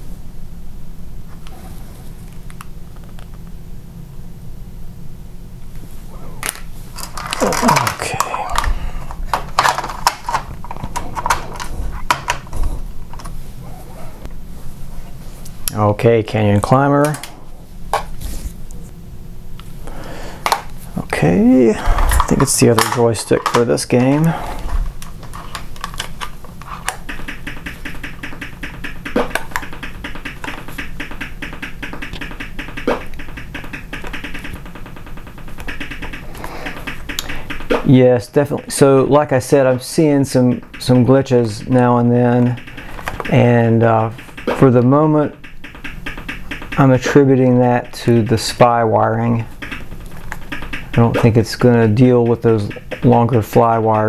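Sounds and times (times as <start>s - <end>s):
rapid electronic ticks: 21.1s - 24.4s, 26.8s - 54.0s
computer keyboard key clicks: 26.9s - 38.9s, 40.3s - 43.5s, 49.6s - 54.0s
sharp electronic blips: 26.9s - 54.0s.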